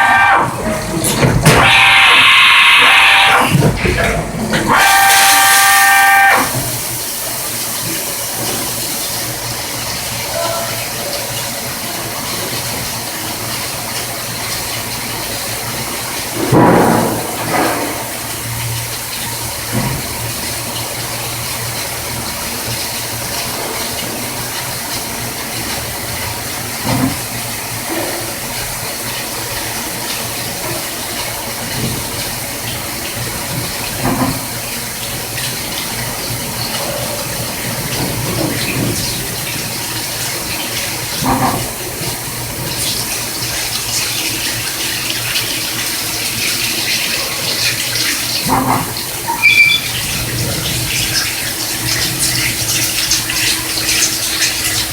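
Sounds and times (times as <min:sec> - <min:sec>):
cnc machine cutting metal: 0:00.0 - 0:06.8
coolant hiss: 0:00.0 - 0:54.9.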